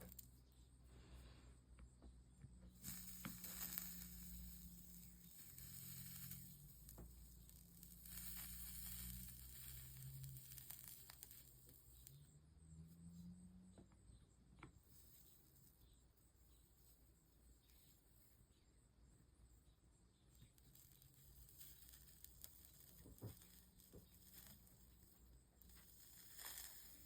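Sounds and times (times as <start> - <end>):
solder sizzling: 0.0 - 1.6, 2.5 - 13.4, 14.8 - 18.4, 20.2 - 27.0.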